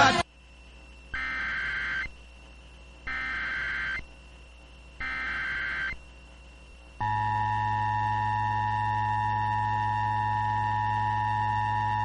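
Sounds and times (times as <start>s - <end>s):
warbling digital data tones: 1.1s - 2.2s, 3.1s - 4.1s, 5.0s - 6.0s.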